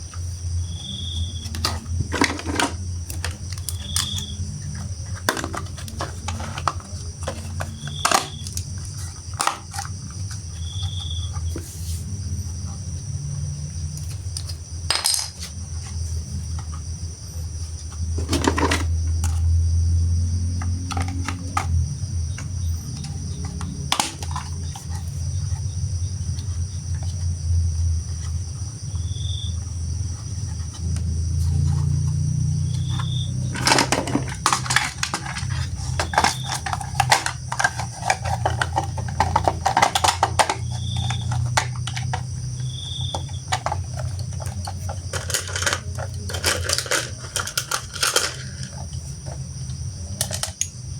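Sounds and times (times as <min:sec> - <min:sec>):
toy parts clicking and clattering: 0:01.4 - 0:10.4, 0:18.2 - 0:19.5, 0:20.8 - 0:21.8, 0:22.4 - 0:25.1, 0:32.6 - 0:49.4, 0:50.2 - 0:50.8.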